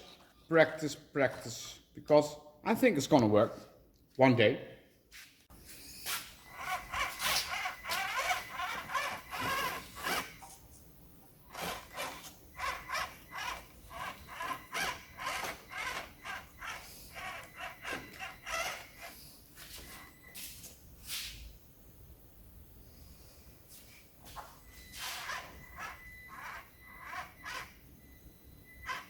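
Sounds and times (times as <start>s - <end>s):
small electric motor whining: 6.4s - 10.6s, 11.4s - 19.9s, 24.9s - 28.1s, 28.8s - 29.0s.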